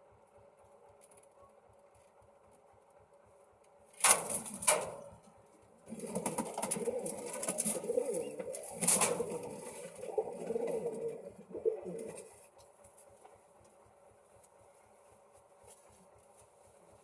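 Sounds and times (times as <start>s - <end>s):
pigeons cooing: 5.8s - 12.5s.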